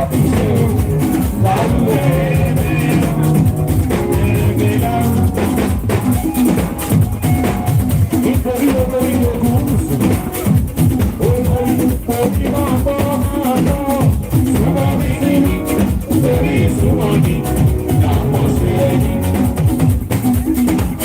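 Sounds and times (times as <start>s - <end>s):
person singing: 0.0s - 5.8s, 8.1s - 19.8s
music with drums and guitar: 0.0s - 21.0s.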